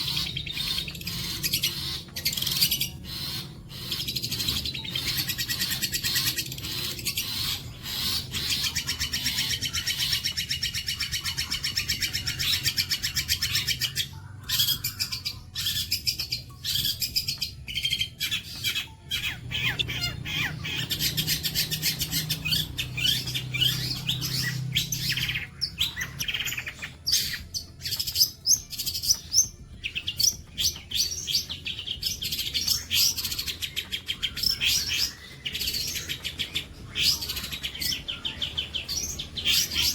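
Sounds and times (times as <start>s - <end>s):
bird chattering song: 0.0s - 39.9s.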